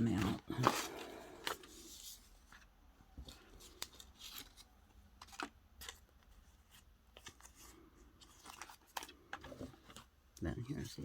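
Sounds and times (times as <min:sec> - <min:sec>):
paper and plastic packets rustling: 0:00.0 - 0:11.0.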